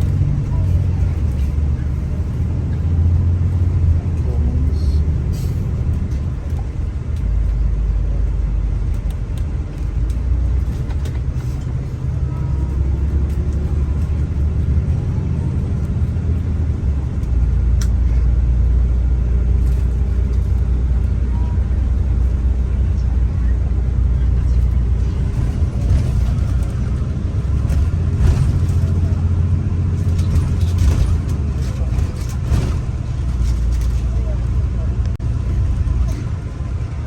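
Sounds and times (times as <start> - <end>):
bus engine and road noise: 0.0 - 37.0
light rattles: 24.0 - 37.0.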